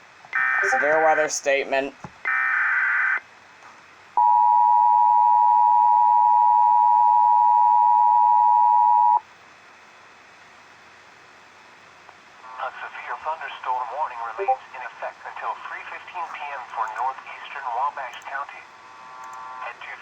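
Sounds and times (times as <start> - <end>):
two-tone attention signal: 0.6 - 1.0.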